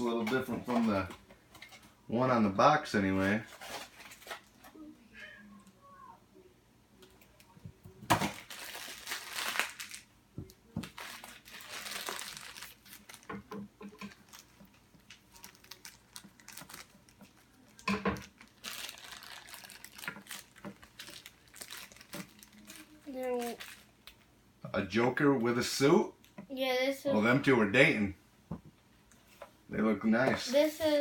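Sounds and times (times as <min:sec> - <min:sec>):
packaging crinkling and tearing: 0:03.3 - 0:04.6, 0:08.1 - 0:10.1, 0:10.8 - 0:13.4, 0:14.0 - 0:24.2.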